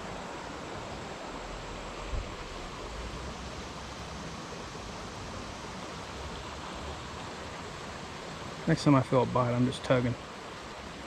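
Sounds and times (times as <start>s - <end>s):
creek water rushing: 0.0s - 11.0s.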